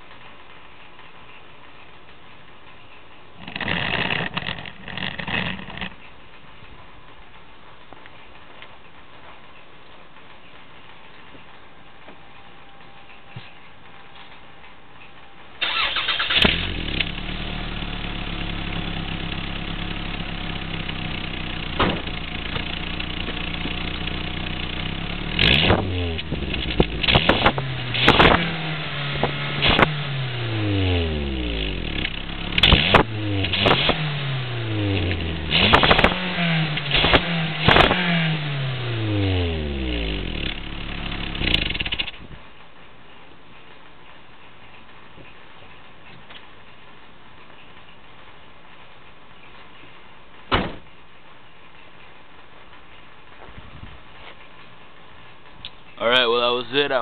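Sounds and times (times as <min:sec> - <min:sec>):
car engine idling and revving: 0:15.7 - 0:42.2.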